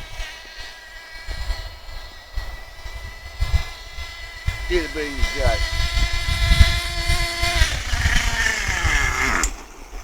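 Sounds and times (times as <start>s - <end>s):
small model car engine whining: 0.0s - 10.0s.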